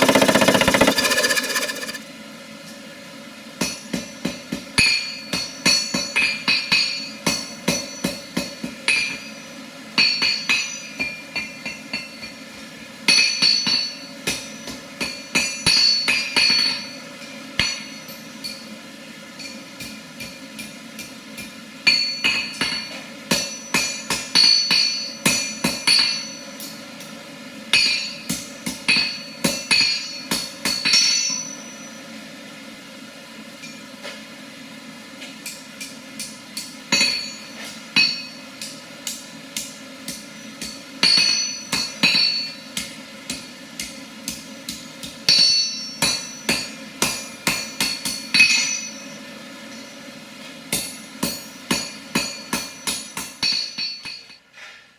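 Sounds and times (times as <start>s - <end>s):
hammer striking steel on anvil: 19.4s - 26.8s, 35.4s - 49.2s, 50.7s - 54.4s.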